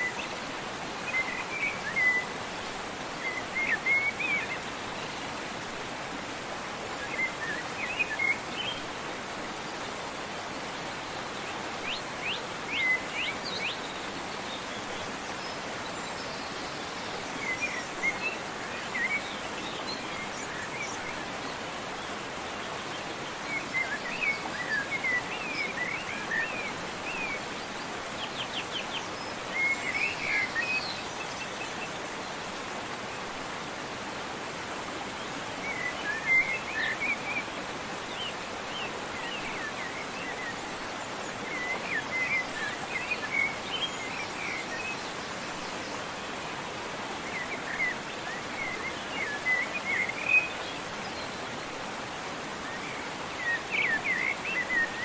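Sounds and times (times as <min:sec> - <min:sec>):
songbirds chirping and twittering: 0:00.0 - 0:55.0
waterfall rushing: 0:00.0 - 0:55.0.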